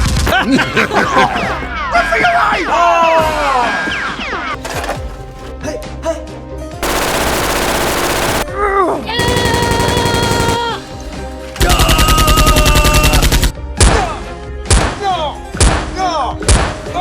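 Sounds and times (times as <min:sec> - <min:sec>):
automatic gunfire bursts: 0:06.8 - 0:08.5, 0:09.2 - 0:10.8.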